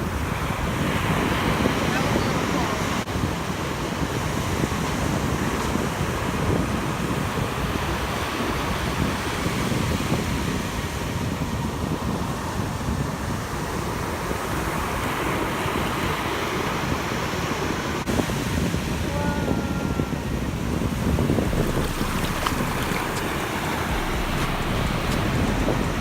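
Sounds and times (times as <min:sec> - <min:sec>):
wind rumbling on microphone: 0:00.0 - 0:26.0
ocean surf washing in: 0:16.4 - 0:26.0.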